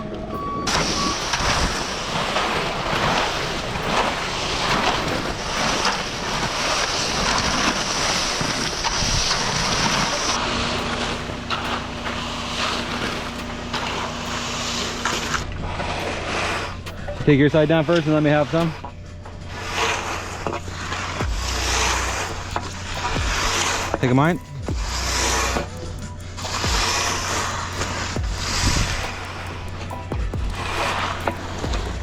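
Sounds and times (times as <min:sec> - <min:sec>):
wind rushing over microphone: 0:00.0 - 0:12.9, 0:20.6 - 0:32.0
truck engine running: 0:00.0 - 0:32.0.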